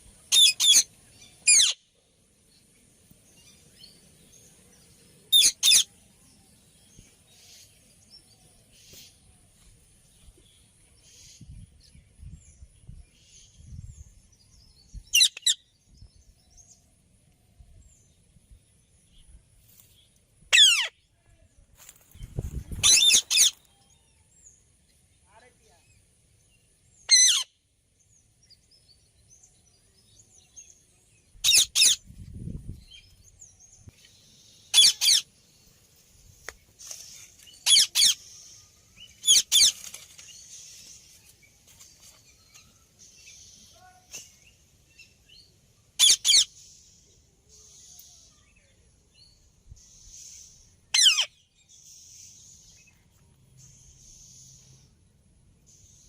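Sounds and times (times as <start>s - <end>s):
parakeet screeching: 27.1s - 27.5s, 51.0s - 51.3s.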